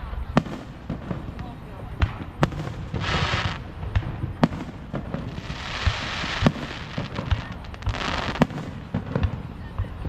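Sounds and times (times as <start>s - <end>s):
fireworks bangs: 0.0s - 10.0s
fireworks hissing crackle: 0.0s - 10.0s.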